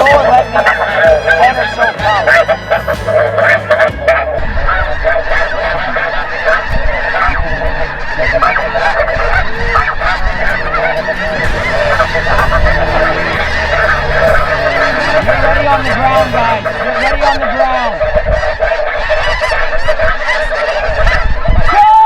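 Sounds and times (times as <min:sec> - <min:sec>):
geese honking: 0:00.0 - 0:22.0.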